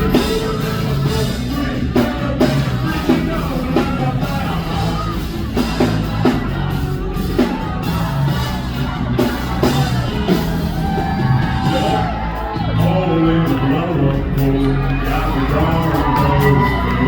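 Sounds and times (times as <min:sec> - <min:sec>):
bass: 0:00.0 - 0:17.0
drum kit beat: 0:00.0 - 0:17.0
person singing: 0:00.0 - 0:17.0
rock music: 0:00.0 - 0:17.0.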